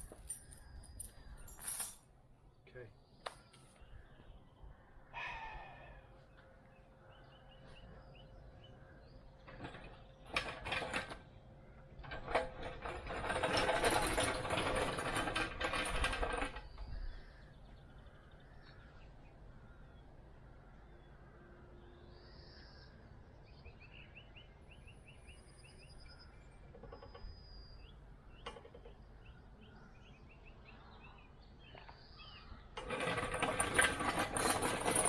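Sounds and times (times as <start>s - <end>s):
continuous rattling: 0.0s - 2.0s, 9.3s - 17.2s, 32.8s - 35.0s
knocks and clatters: 0.0s - 2.0s, 9.4s - 11.3s, 12.0s - 16.9s, 32.8s - 35.0s.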